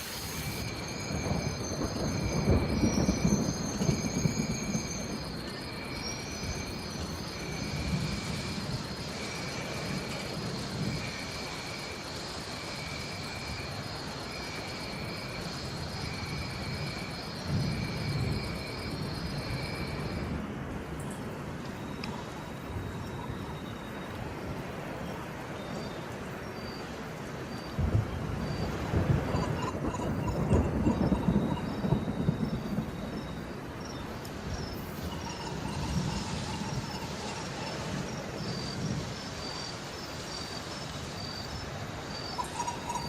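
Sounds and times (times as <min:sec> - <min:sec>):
steady rain: 0:00.0 - 0:43.0
thunder rumbling: 0:00.4 - 0:11.6, 0:14.9 - 0:25.0, 0:27.7 - 0:40.0.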